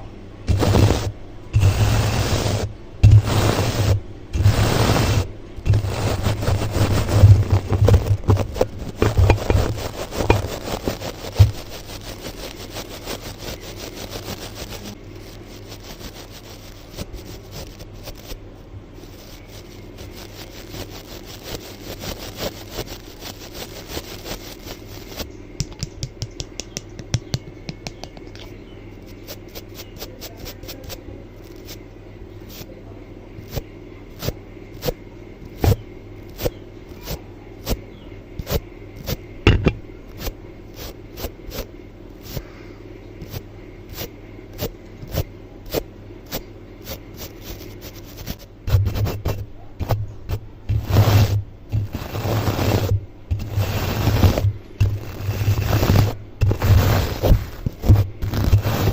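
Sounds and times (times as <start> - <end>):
brushing scrape: 0.5 - 18.4, 19.0 - 25.3, 29.0 - 31.8, 33.4 - 37.8, 38.4 - 58.9
sharp taps and clicks: 25.2 - 28.5.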